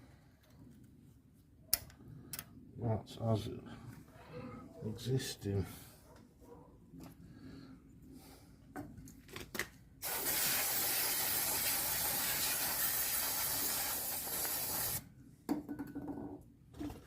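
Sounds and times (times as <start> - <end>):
aerosol can spraying: 10.0 - 15.0.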